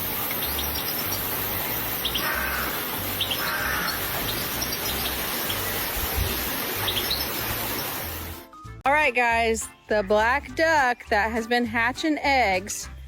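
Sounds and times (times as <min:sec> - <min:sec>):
small birds chirping: 0:00.0 - 0:08.0
steady hiss: 0:00.0 - 0:08.4
low background music: 0:00.0 - 0:13.0.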